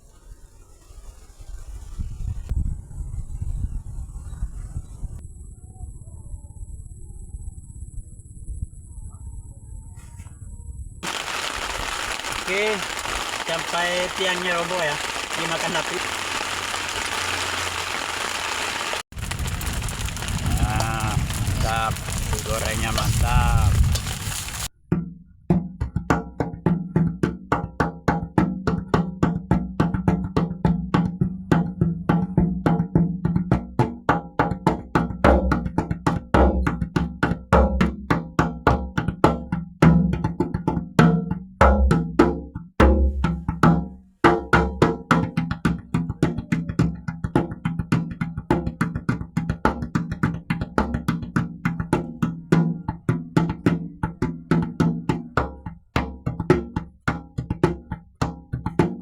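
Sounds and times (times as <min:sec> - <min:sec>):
fast percussion beat: 0:11.0 - 0:24.7, 0:26.9 - 0:59.0.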